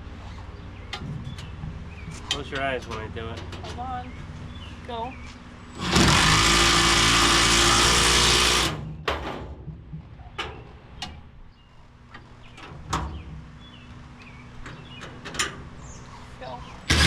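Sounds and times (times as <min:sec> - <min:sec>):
power tool running: 0:05.8 - 0:08.9.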